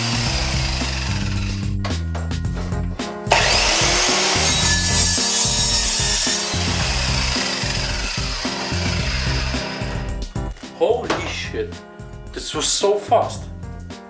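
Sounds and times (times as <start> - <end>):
circular saw cutting steel: 0.0 - 1.6, 3.3 - 10.0.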